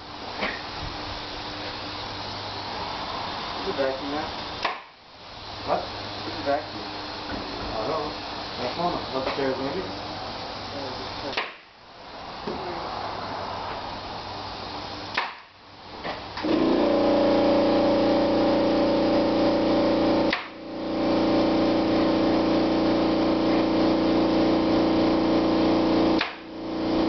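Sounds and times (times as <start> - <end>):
electric motor humming: 16.4 - 27.0.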